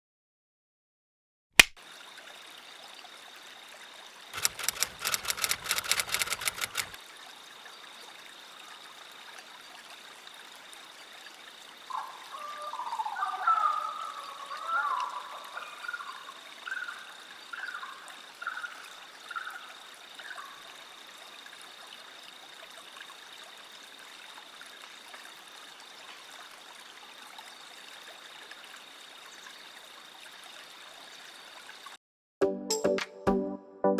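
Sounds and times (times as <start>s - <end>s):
water trickling: 1.8s - 32.0s
music: 32.4s - 33.9s.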